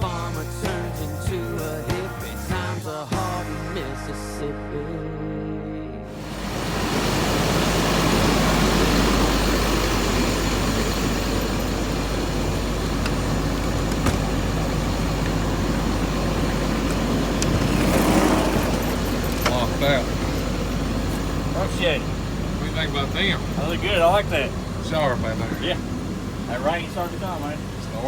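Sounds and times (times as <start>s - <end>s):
truck engine idling: 6.1s - 28.0s.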